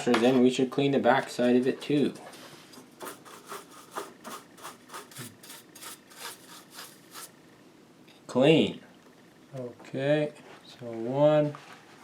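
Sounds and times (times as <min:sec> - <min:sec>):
brush scrubbing circuit board: 0:03.0 - 0:07.4.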